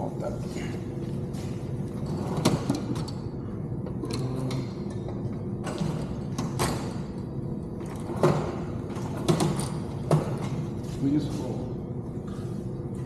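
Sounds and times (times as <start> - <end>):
low background hum: 0.0 - 13.0
knocks and clicks of parts handled: 7.8 - 11.0.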